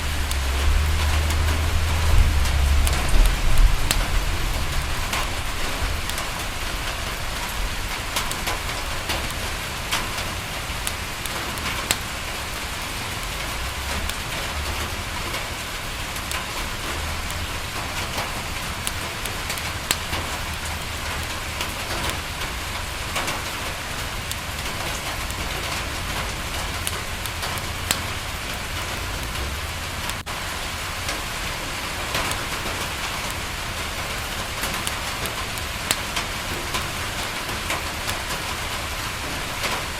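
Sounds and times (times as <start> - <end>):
low rumble: 0.0 - 8.0
crackling wood fire: 0.0 - 39.9
rain against a window: 0.0 - 39.9
raindrops ticking and popping: 0.0 - 39.9.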